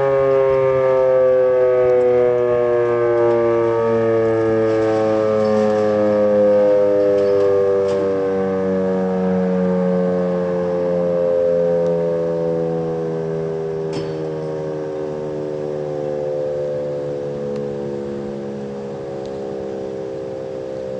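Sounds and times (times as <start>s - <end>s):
warning siren winding down: 0.0s - 20.9s.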